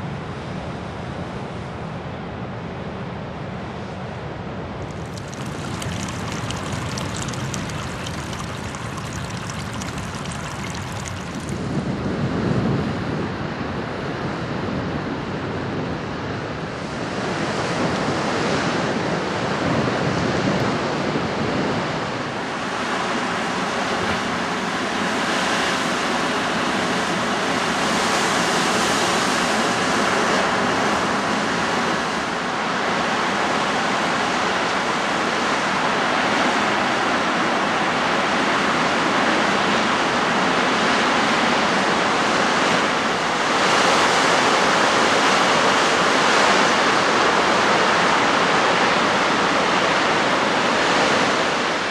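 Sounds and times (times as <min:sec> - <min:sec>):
ocean surf washing: 0:04.8 - 0:11.8.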